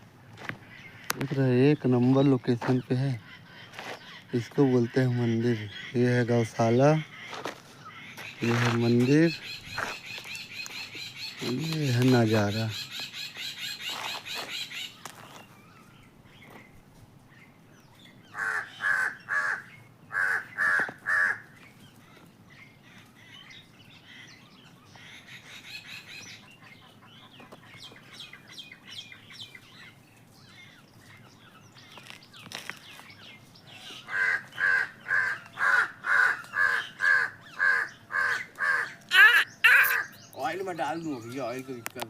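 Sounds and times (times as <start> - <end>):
faint bird chirping: 0.6 - 20.6, 36.4 - 42.0
crows cawing: 3.2 - 15.1, 18.3 - 21.6, 33.7 - 40.2, 41.0 - 42.0.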